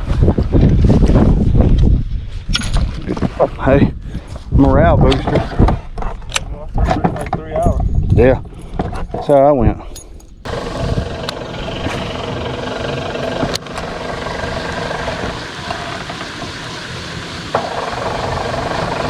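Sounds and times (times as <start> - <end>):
boat motor running: 10.5 - 19.0.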